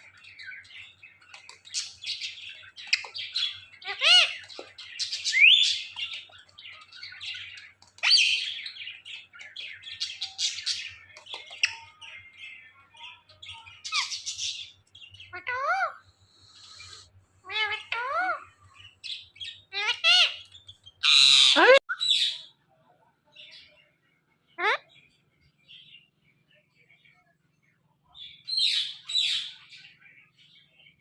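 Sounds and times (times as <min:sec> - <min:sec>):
parrot chattering and squawking: 0:01.6 - 0:06.0, 0:15.3 - 0:16.0, 0:17.5 - 0:18.5, 0:19.7 - 0:22.3.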